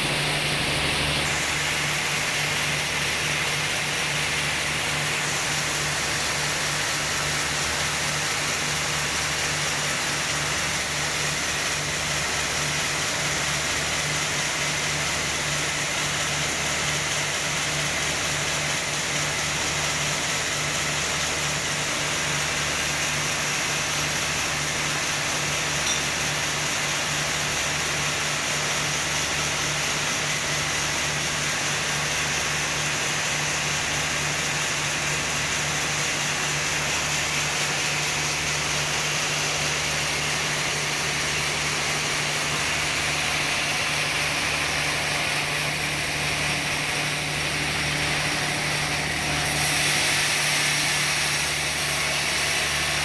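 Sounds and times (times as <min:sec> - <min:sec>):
sawmill machinery humming: 0:00.0 - 0:53.0.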